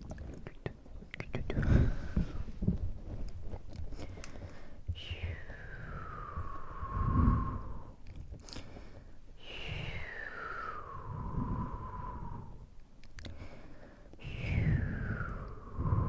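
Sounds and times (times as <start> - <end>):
wet mouth clicks: 0.0 - 1.7, 13.0 - 13.4.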